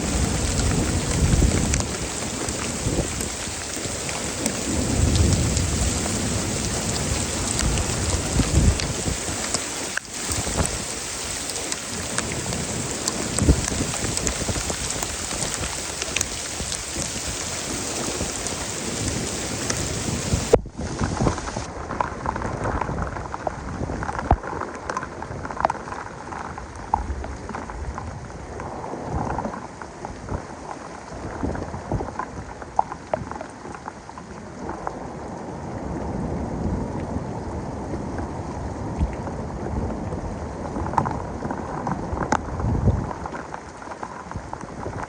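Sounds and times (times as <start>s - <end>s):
rolling thunder rumble: 0.0s - 24.2s
heavy rain pouring: 0.0s - 45.0s
rain drops splashing: 0.0s - 45.0s.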